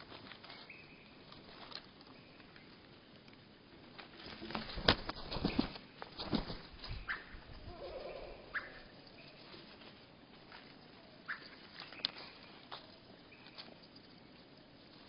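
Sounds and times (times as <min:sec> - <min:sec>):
slowed bird calls: 0:07.0 - 0:09.7, 0:10.9 - 0:13.6.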